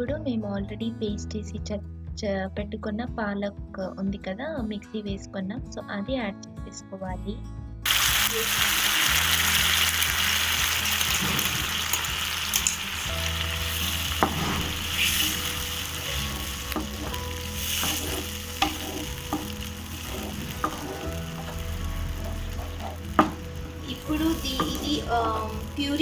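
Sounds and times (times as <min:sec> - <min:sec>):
puree sizzling in a hot pan: 0:07.9 - 0:26.0
spoon scraping a pan: 0:07.9 - 0:26.0.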